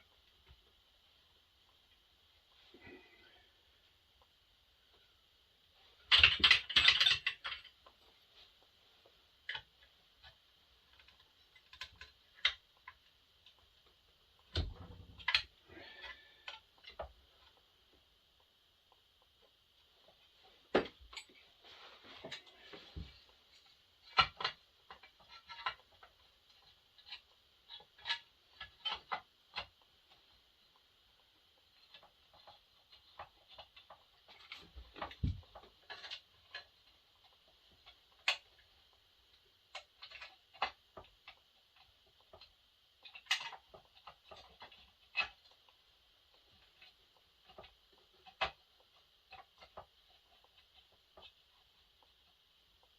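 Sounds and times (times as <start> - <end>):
tools clicking and knocking on workbench: 6.0 - 7.9.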